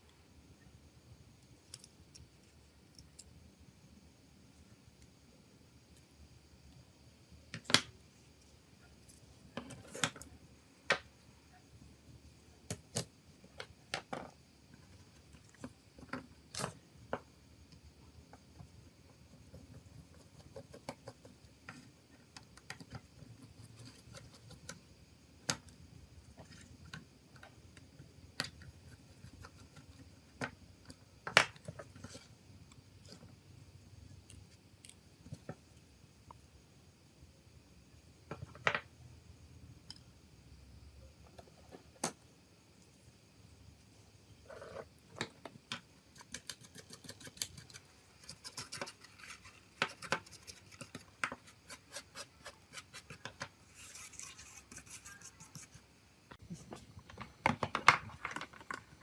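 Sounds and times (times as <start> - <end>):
small clicks and taps of tools: 1.6 - 2.3.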